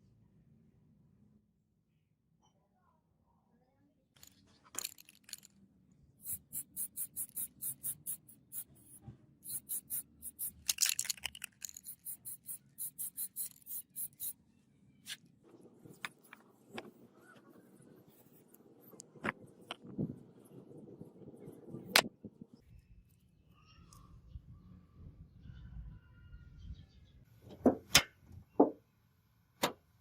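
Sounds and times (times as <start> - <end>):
hand scraping rusted steel: 6.2 - 14.4.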